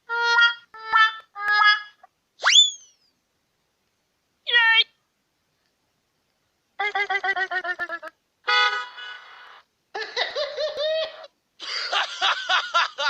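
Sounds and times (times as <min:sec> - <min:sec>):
rapid pulsed cartoon notes: 0:00.1 - 0:02.1
horn-like toot: 0:08.5 - 0:09.4.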